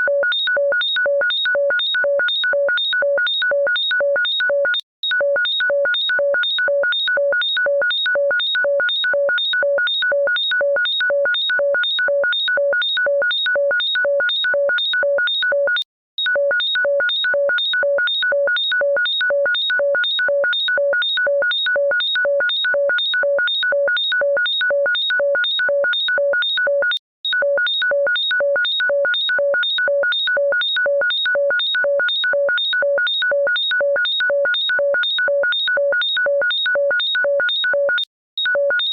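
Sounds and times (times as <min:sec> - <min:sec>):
electronic ringtone beeps: 0:31.0 - 0:38.9.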